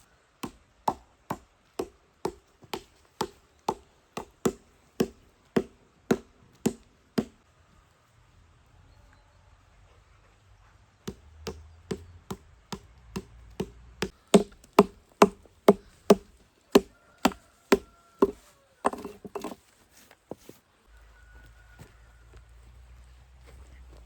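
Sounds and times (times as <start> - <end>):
tool striking wood: 0.4 - 7.4, 11.1 - 19.6.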